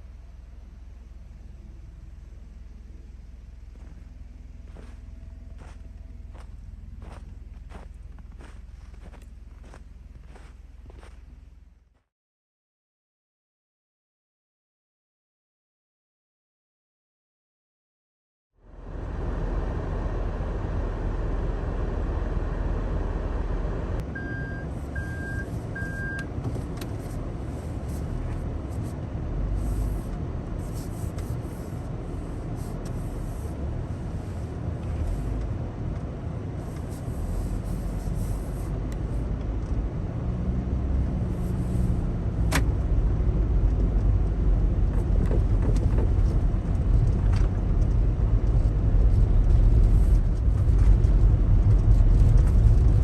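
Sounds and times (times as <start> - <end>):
car engine and road rumble: 0.0 - 12.1, 18.6 - 53.0.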